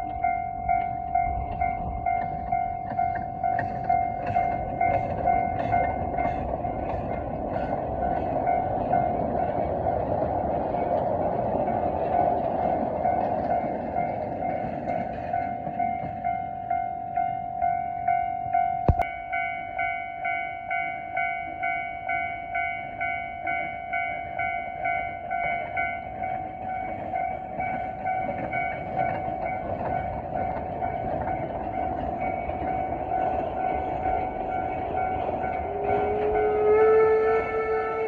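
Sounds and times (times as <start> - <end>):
level-crossing bell clanging: 0.0 - 36.9
steam locomotive running: 0.0 - 38.0
locomotive whistle: 31.7 - 38.0.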